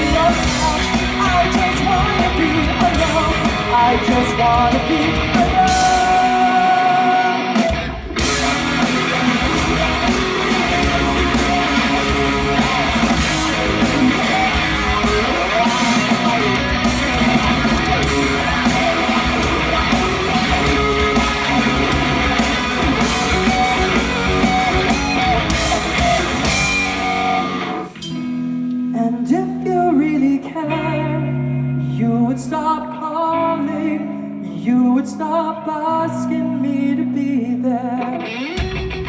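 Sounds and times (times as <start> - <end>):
rock band playing: 0.0 - 29.2, 38.1 - 39.0.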